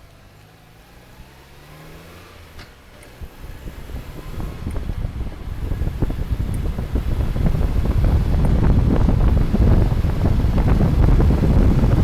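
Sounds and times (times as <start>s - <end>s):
car engine rumbling: 0.0s - 12.0s
rapid engine ticking: 3.2s - 12.0s.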